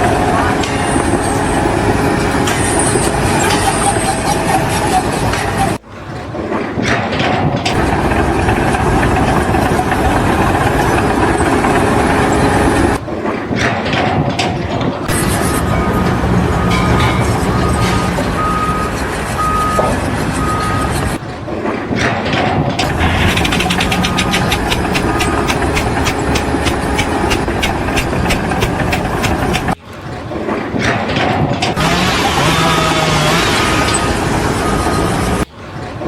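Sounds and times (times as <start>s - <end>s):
heavy machinery running: 0.0s - 36.0s
fast rattling clatter: 6.8s - 12.3s, 21.9s - 29.8s.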